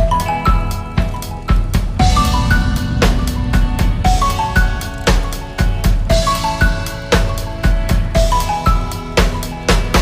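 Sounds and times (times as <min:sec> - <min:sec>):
drum kit beat: 0:01.3 - 0:06.6.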